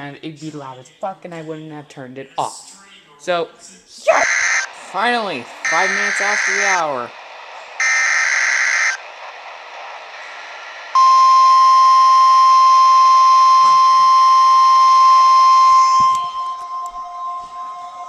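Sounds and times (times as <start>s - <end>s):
steady high alarm tone: 5.6s - 7.0s, 7.8s - 9.0s, 10.9s - 18.0s.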